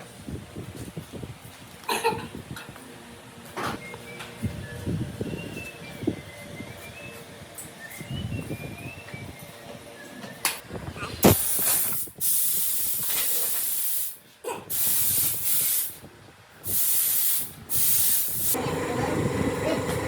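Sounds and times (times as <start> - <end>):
pressurised spray hissing: 11.2 - 16.0, 16.6 - 19.0.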